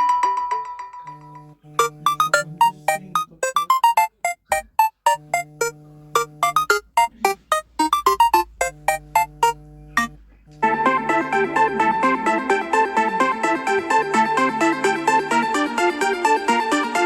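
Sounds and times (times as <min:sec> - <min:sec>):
synthesized phone ringtone melody: 0:00.0 - 0:17.0
held low synth chords: 0:04.3 - 0:15.4.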